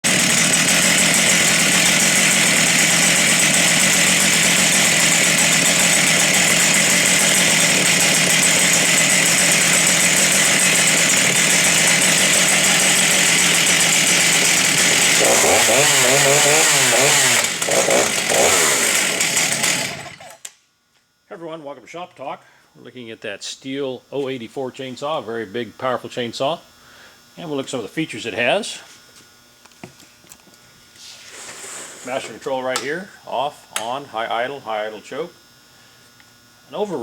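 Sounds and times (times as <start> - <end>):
chainsaw revving: 0.0 - 20.5.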